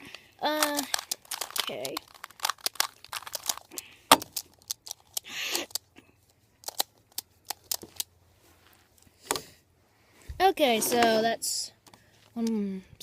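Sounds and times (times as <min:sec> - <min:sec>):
puzzle cube layers clicking: 0:00.5 - 0:05.8, 0:06.6 - 0:08.1.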